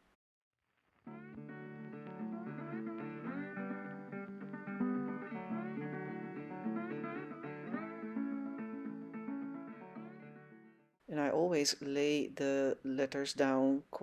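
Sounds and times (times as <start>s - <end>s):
acoustic guitar melody: 1.0s - 10.9s.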